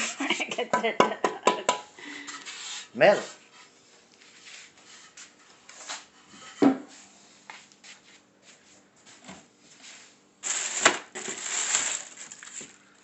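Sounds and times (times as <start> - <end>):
loud rustle: 10.4 - 12.6.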